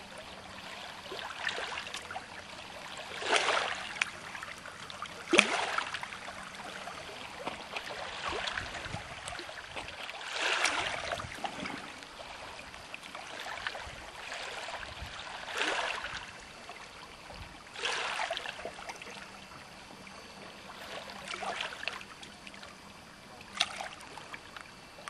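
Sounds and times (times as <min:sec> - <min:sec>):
water splashing against boat hull: 0:00.0 - 0:19.2, 0:23.4 - 0:24.8
faint steady hum: 0:00.0 - 0:25.0.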